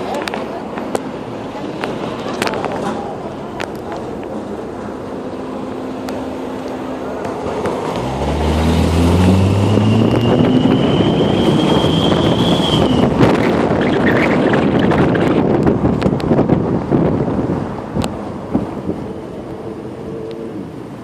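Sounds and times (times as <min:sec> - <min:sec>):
wind and road noise: 0:00.0 - 0:21.0
car engine revving: 0:07.1 - 0:15.5
high exhaust whistle: 0:09.3 - 0:13.2.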